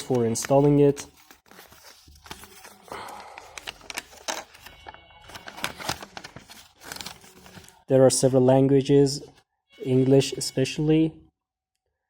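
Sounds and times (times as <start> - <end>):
packaging rustling: 0.0 - 7.8.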